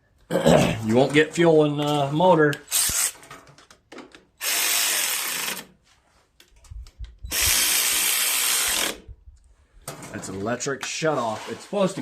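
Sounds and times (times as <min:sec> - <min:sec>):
handheld power tool running: 0:02.7 - 0:03.2, 0:04.4 - 0:05.7, 0:07.3 - 0:09.1.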